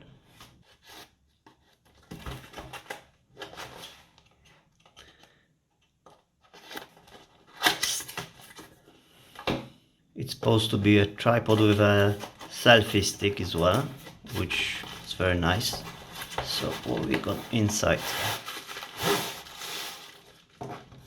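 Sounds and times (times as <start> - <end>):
cardboard box tearing: 16.0 - 20.3.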